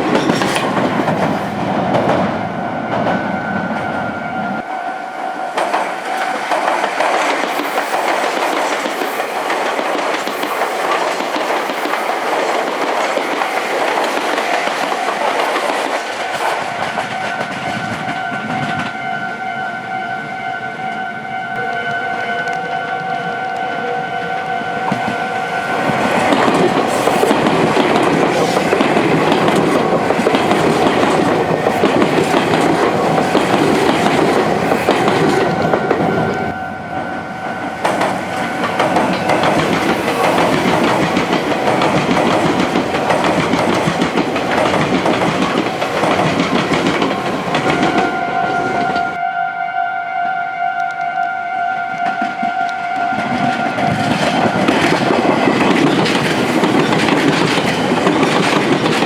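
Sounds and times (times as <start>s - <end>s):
train wheels clacking on rail joints: 0.0s - 3.3s, 5.6s - 19.0s, 24.8s - 36.6s, 37.8s - 49.2s, 51.9s - 59.0s
level crossing warning bell: 16.8s - 43.2s.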